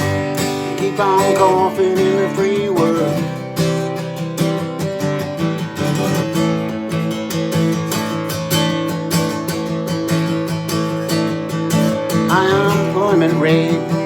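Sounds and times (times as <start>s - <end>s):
person singing: 0.0s - 4.0s, 12.2s - 14.0s
rock guitar strumming: 0.0s - 14.0s.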